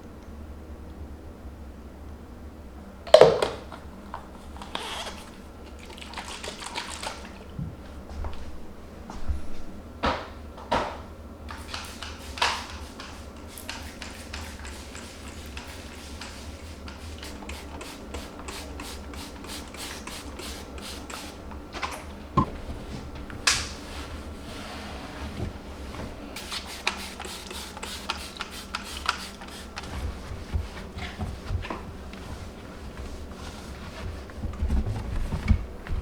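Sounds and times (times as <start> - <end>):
water spray hissing: 11.6 - 21.4, 26.4 - 30.2
scrubbing strokes: 11.9 - 21.4, 23.8 - 34.7.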